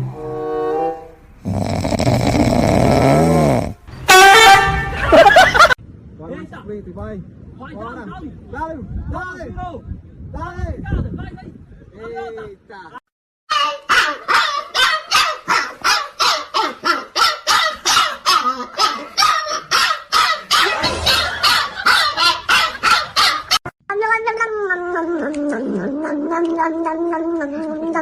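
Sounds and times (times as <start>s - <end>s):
dog barking rapidly: 13.5s - 23.6s.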